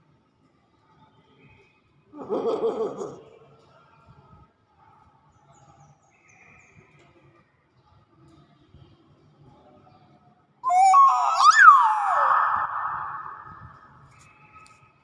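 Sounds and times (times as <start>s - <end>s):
bird loud call: 10.6s - 14.0s
faint high chirps: 10.6s - 14.0s.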